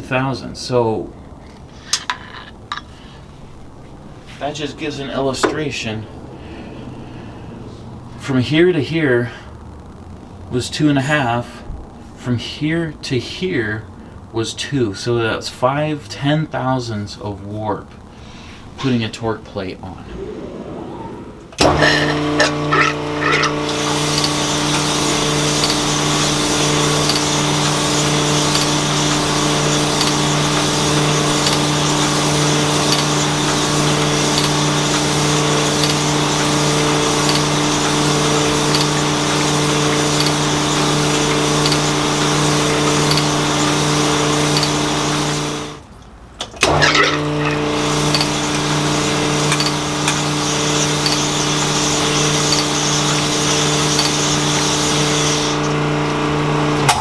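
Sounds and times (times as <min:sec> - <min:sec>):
honing machine humming: 0:21.5 - 0:45.9, 0:46.6 - 0:57.0
faint ticking: 0:21.6 - 0:45.8, 0:47.4 - 0:56.9.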